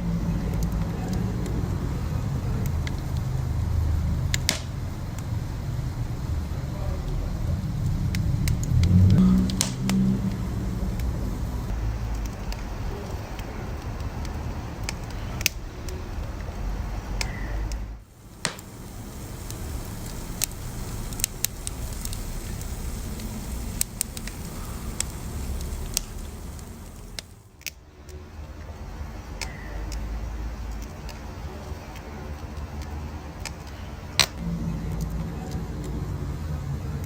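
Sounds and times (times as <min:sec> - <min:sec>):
low rumble of flames: 0:00.0 - 0:37.0
wood fire crackling and popping: 0:00.0 - 0:37.0.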